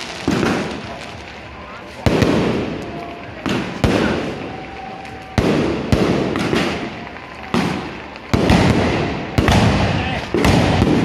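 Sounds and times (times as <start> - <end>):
fireworks crackling bangs: 0.0 - 11.0.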